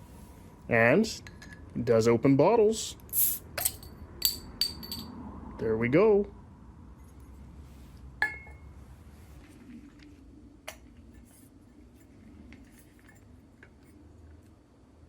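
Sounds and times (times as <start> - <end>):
glass bottle and opener clinking: 3.2 - 5.1, 8.2 - 8.6.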